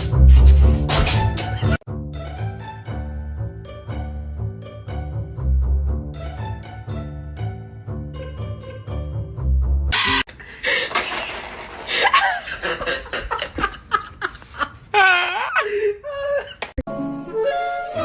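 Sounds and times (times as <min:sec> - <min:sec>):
people laughing: 0:10.0 - 0:16.7.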